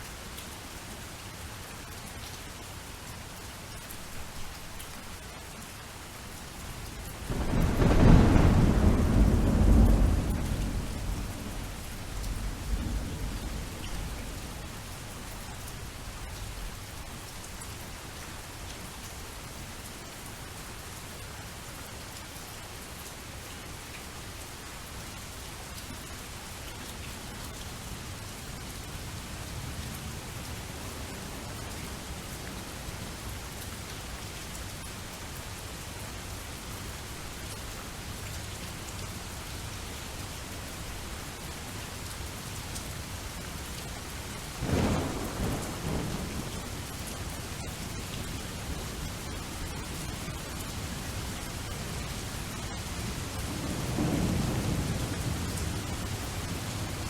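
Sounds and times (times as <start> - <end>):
steady rainfall: 0.0 - 57.0
thunder rumbling: 7.3 - 14.7, 44.6 - 46.9, 53.3 - 57.0.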